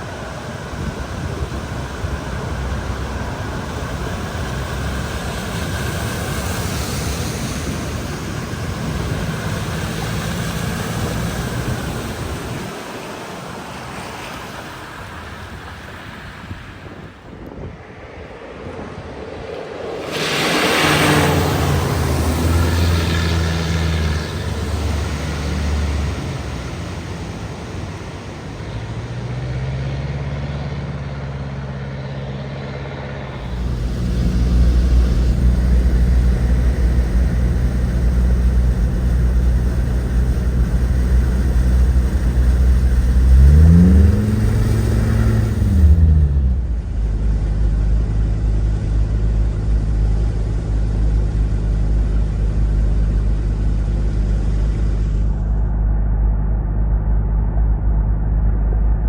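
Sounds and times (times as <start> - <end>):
engine revving: 0.0 - 15.9, 19.8 - 31.3, 33.3 - 47.3
car engines rumbling: 0.0 - 17.5, 18.4 - 59.0.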